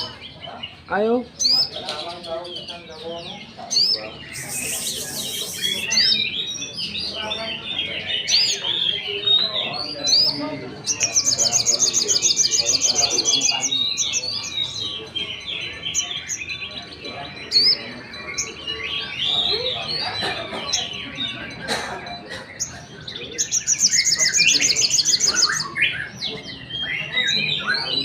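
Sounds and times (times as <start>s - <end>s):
birds singing: 0.0s - 28.0s
fast rattling bird trill: 3.7s - 16.6s, 22.6s - 26.1s.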